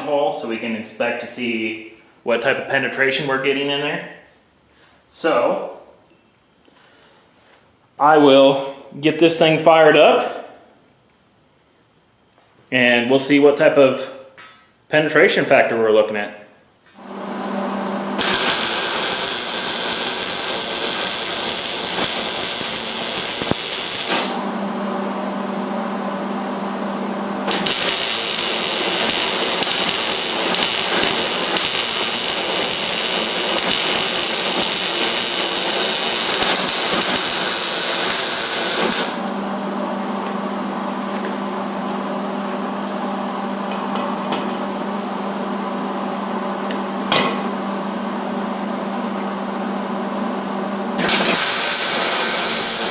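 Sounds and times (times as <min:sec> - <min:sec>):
steady low hum: 0:00.0 - 0:51.0
welding arc crackling and hissing: 0:18.2 - 0:24.6, 0:27.4 - 0:39.4, 0:51.0 - 0:52.9.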